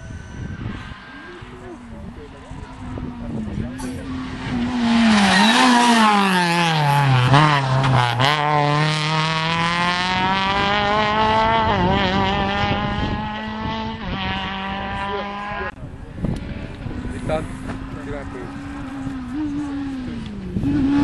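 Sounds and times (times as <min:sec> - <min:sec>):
rally car engine revving: 0:00.2 - 0:21.0.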